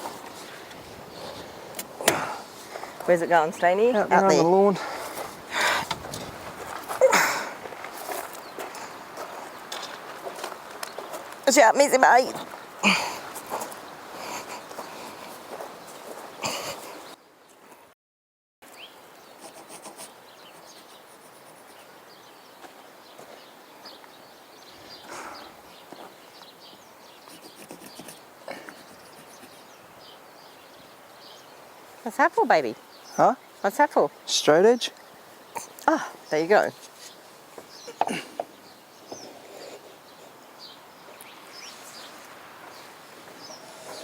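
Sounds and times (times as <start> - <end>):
background hiss: 0.0 - 17.6, 18.7 - 44.0
rustle: 0.0 - 17.9, 18.6 - 44.0
outdoor background: 0.0 - 18.0, 18.6 - 44.0
bird chirps: 18.7 - 31.6, 34.8 - 44.0.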